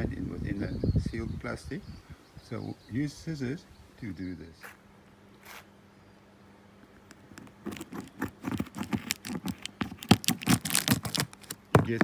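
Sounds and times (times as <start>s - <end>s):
scissors cutting plastic: 7.4s - 11.7s
plastic wrapping crackling: 7.8s - 12.0s.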